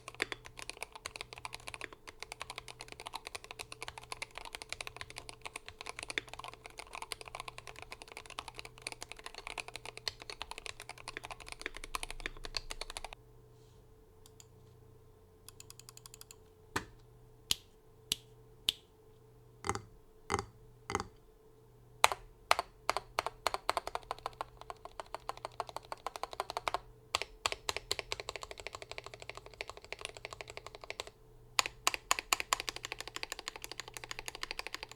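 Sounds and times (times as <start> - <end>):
fast keyboard typing: 0.0 - 13.2, 15.5 - 16.4, 22.0 - 34.9.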